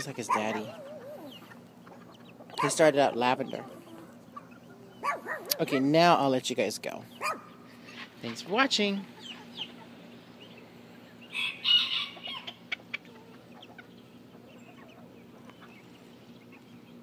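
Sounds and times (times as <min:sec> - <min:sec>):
chickens clucking: 0:00.0 - 0:17.0
loud chicken call: 0:11.3 - 0:13.5.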